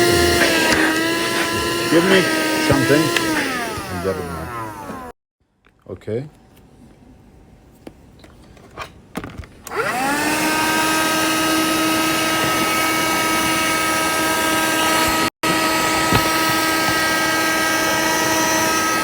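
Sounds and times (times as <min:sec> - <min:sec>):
handheld vacuum cleaner whine: 0:00.0 - 0:05.2, 0:09.6 - 0:19.0.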